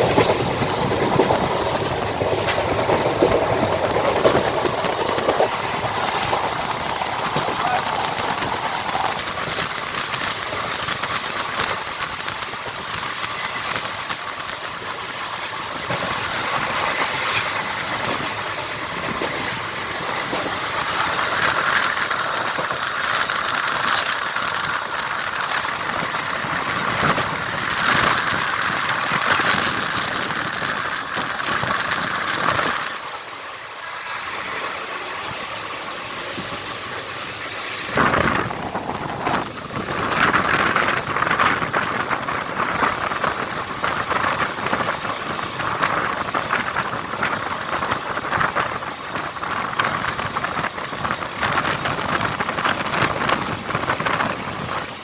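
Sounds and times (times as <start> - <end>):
train clanks: 0.0 - 55.0
train wheels rolling on rails: 0.0 - 55.0.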